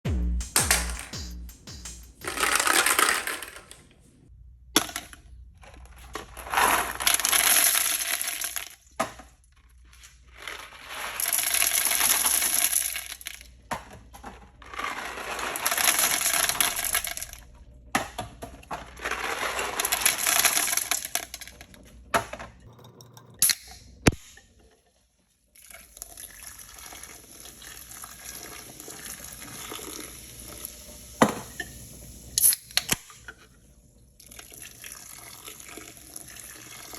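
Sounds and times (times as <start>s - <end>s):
toilet flushing: 14.7s - 17.4s, 26.2s - 33.0s, 34.2s - 36.9s.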